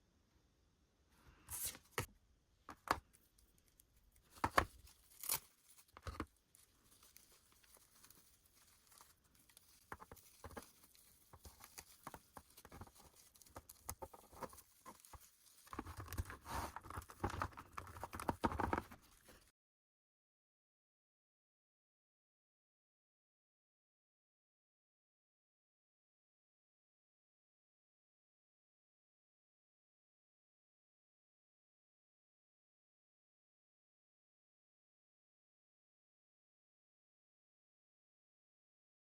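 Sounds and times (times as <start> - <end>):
wrapping crinkling and tearing: 3.1 - 19.5.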